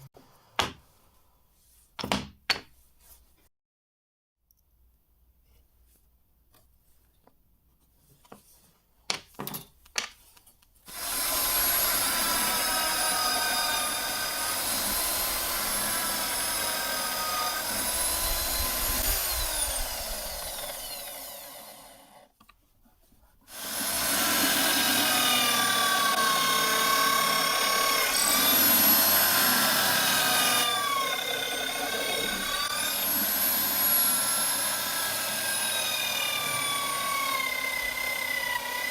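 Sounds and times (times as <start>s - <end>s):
power tool motor whining: 10.9s - 22.3s, 23.5s - 38.9s.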